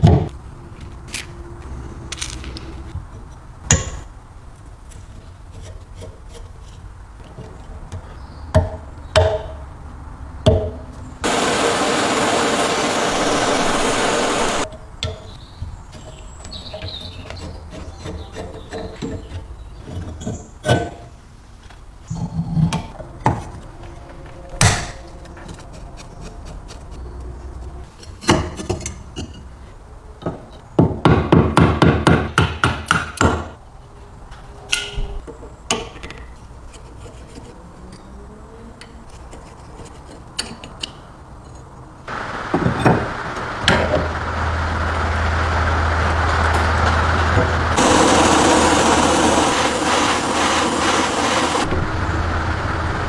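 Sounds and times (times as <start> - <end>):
machine humming: 11.2 - 14.7, 42.1 - 53.0.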